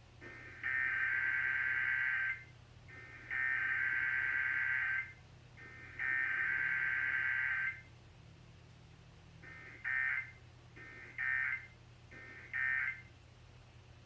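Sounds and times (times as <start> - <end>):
high two-tone data bursts: 0.2 - 7.8, 9.4 - 13.0.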